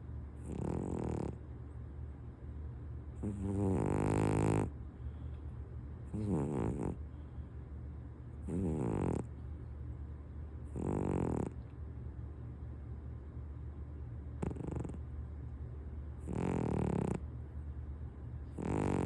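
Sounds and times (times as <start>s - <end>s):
cat snoring loudly: 0.4s - 1.4s, 3.2s - 4.7s, 6.1s - 7.0s, 8.4s - 9.3s, 10.7s - 11.6s, 14.4s - 15.0s, 16.2s - 17.2s, 18.5s - 19.0s.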